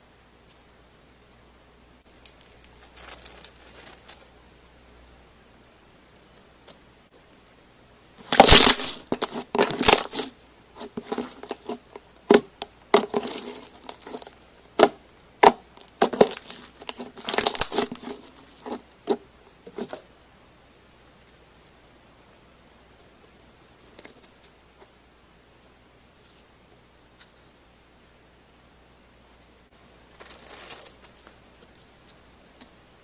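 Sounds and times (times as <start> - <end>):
slime crackling and popping: 8.2 - 19.2.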